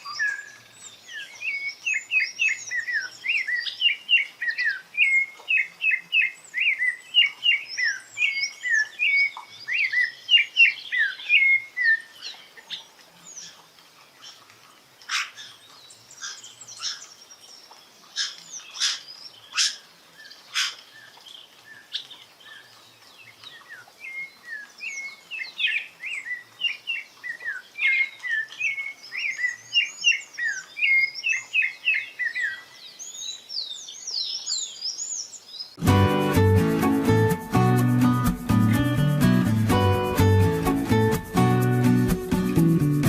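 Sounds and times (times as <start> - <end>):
high thin bird twittering: 0.0 - 14.4, 15.1 - 35.8
thrush singing: 35.8 - 43.0.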